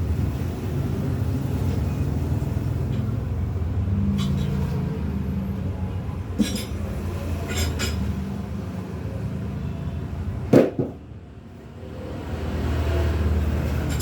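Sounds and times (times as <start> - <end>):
metal tools clinking on wheel rim: 6.4 - 8.2, 13.6 - 14.0.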